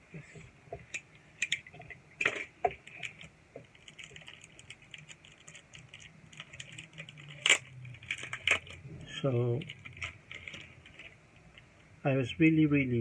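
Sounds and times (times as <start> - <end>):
cards and packaging rustling: 1.4 - 11.7.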